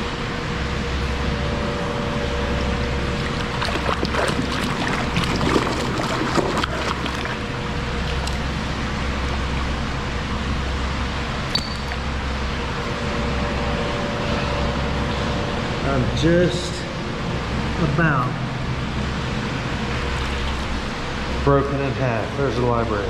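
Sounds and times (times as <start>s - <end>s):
creek water trickling: 3.0s - 9.4s, 11.4s - 12.8s, 19.9s - 21.0s.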